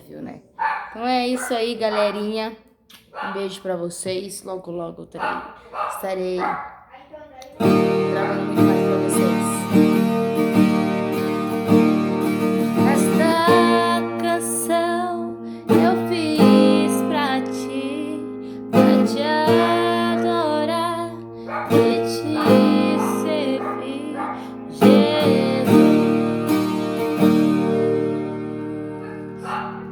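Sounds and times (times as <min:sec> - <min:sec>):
person singing: 0:07.6 - 0:11.4, 0:12.7 - 0:26.8
strummed acoustic string instrument: 0:07.6 - 0:29.9.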